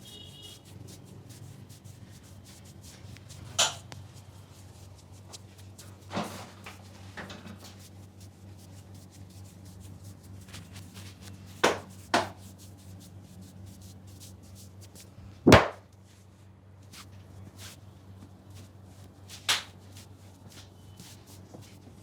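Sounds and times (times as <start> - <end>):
rubbing and crackling on scalp: 0.0 - 15.1, 16.0 - 22.0
sharp hand strikes: 15.5 - 15.8.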